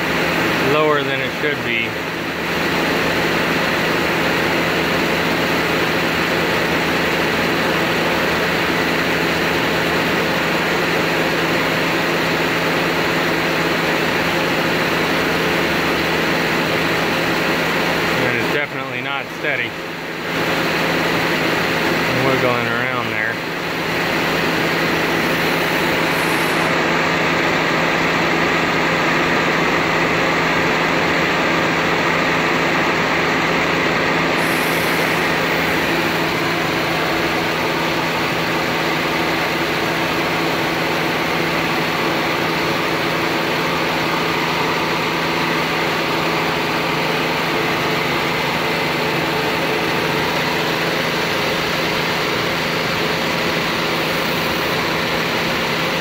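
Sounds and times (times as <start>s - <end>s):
air conditioning running: 0.0s - 56.0s
car engine idling: 12.6s - 28.6s, 29.2s - 56.0s.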